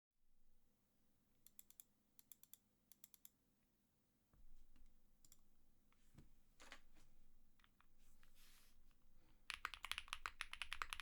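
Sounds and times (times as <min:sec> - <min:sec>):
keyboard keystroke clicks: 0:09.5 - 0:11.0.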